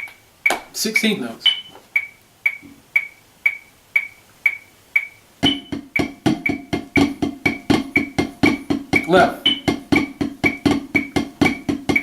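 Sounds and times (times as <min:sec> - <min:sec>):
metronome clicking: 0:00.0 - 0:12.0
drumsticks on a drum: 0:05.4 - 0:12.0.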